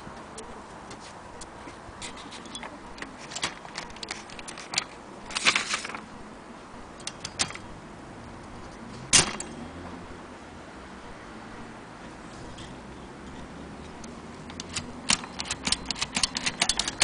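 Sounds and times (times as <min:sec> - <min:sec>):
typewriter keys clacking: 0:02.1 - 0:06.0, 0:07.0 - 0:07.6, 0:14.5 - 0:17.0.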